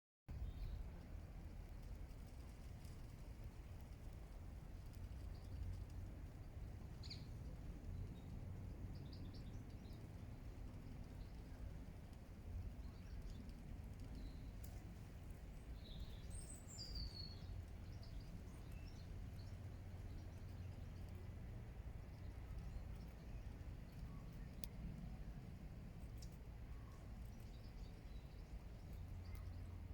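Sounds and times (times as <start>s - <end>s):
low background rumble: 0.3s - 29.9s
faint high bird chirps: 15.8s - 21.3s.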